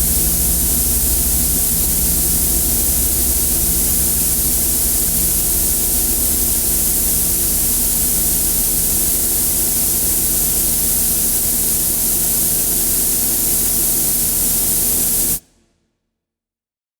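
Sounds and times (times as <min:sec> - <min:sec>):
low droning hum: 0:00.0 - 0:12.0
static hiss: 0:00.0 - 0:15.4.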